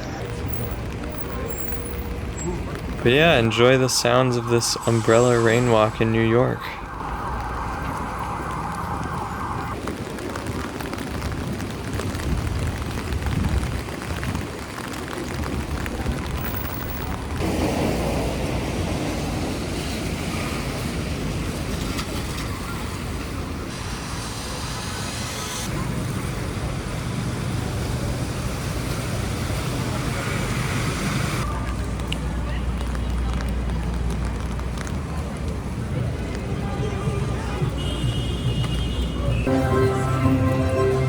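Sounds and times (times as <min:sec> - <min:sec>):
passing traffic: 0:00.0 - 0:41.0
rain hissing: 0:00.3 - 0:31.5.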